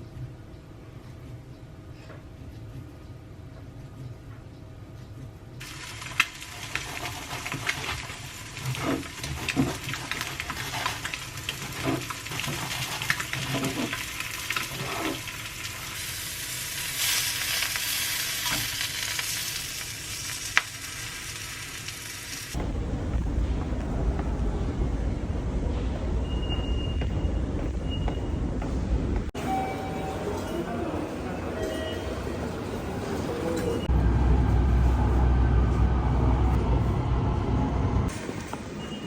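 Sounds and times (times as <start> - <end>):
food sizzling in a frying pan: 5.6 - 22.6
low rumble: 22.6 - 29.4, 33.8 - 38.1.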